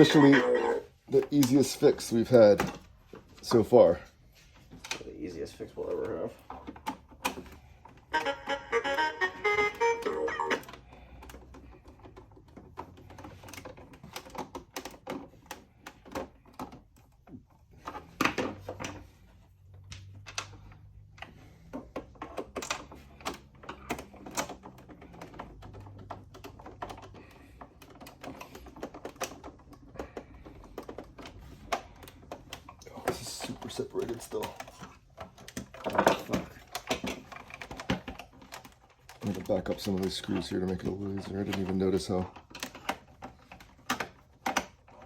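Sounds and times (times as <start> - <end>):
hard plastic clicks and taps: 2.3 - 3.2, 19.7 - 45.0.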